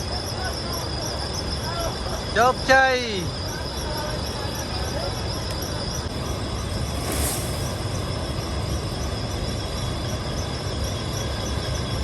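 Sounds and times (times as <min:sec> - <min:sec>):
insects chirping: 0:00.0 - 0:12.0
brief hiss: 0:06.8 - 0:08.0.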